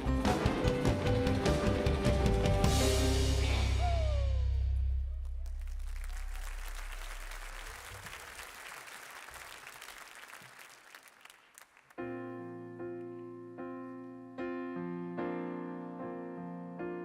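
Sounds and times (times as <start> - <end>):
crowd applause: 0.0 - 2.7, 5.2 - 12.0.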